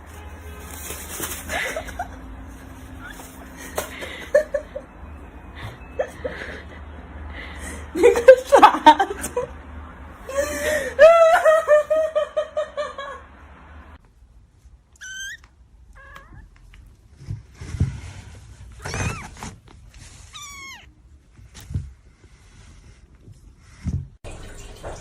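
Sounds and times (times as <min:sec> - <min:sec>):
cat meowing: 0:15.0 - 0:16.7, 0:18.8 - 0:19.4, 0:20.2 - 0:21.0.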